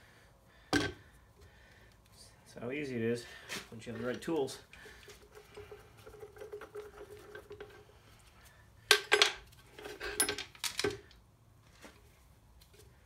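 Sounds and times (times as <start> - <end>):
metal parts clinking on metal: 8.9 - 11.1.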